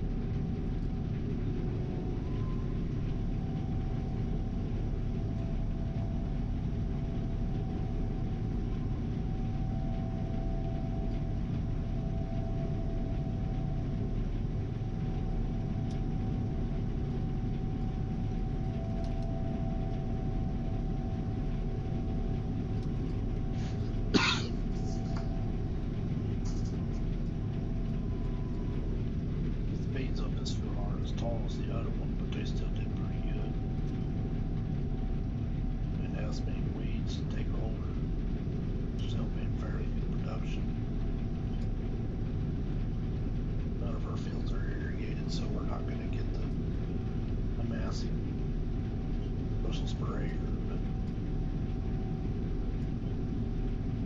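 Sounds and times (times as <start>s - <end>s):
combine harvester rumbling: 0.0s - 54.0s.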